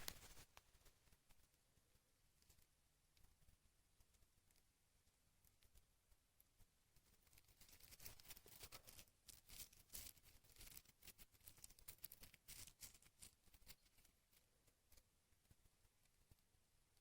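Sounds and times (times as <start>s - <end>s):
dry plant material crackling: 0.0s - 0.4s.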